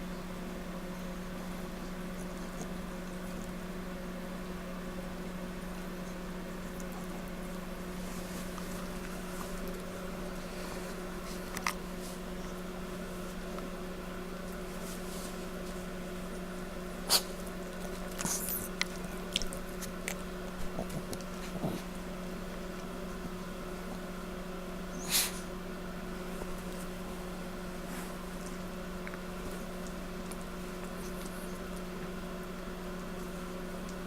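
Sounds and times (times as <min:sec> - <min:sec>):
dog licking and nibbling: 0:02.0 - 0:03.8, 0:05.6 - 0:11.8, 0:14.4 - 0:24.1, 0:27.9 - 0:34.0.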